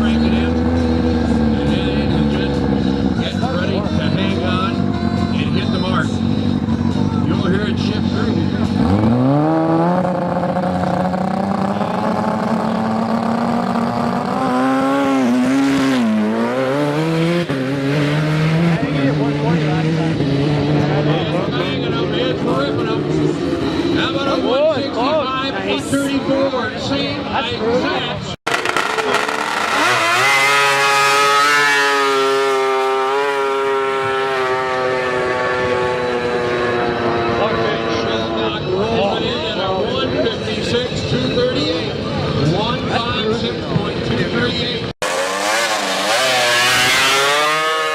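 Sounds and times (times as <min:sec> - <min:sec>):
snowmobile engine at high revs: 0:00.0 - 0:24.4, 0:28.5 - 0:39.4, 0:45.0 - 0:47.9.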